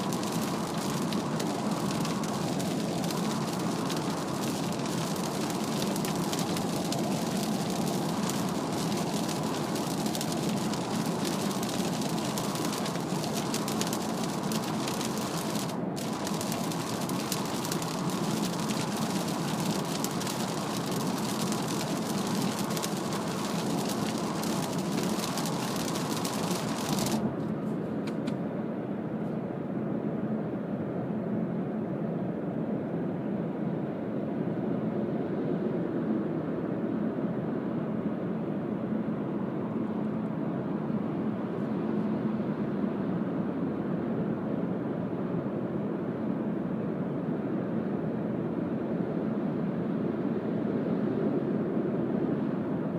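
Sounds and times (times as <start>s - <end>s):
wet tyres and rain hiss: 0.0s - 27.3s
low road and engine drone: 0.0s - 28.8s.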